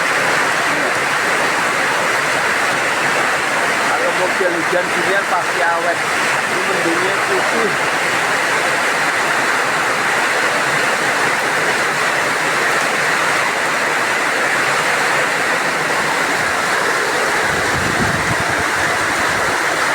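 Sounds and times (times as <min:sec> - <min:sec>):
heavy rain pouring: 0:00.0 - 0:19.9
strong wind: 0:15.0 - 0:19.9.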